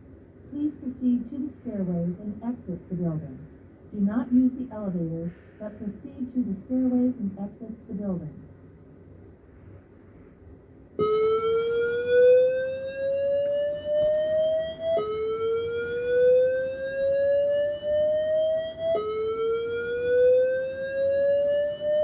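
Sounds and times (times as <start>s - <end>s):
rising fire alarm tone: 11.0s - 22.0s.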